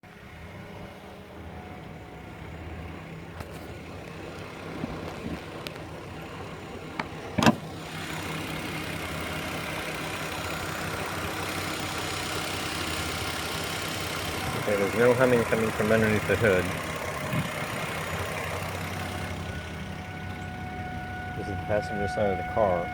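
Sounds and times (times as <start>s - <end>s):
car engine idling with buzz: 0.0s - 22.9s.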